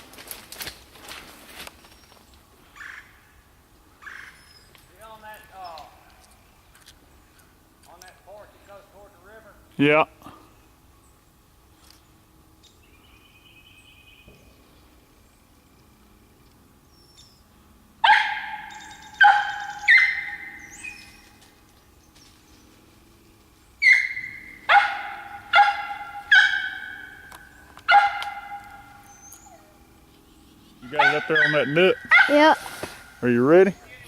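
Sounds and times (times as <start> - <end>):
dog barking: 18.0 - 20.5, 23.8 - 27.1, 27.9 - 29.0, 30.8 - 32.4.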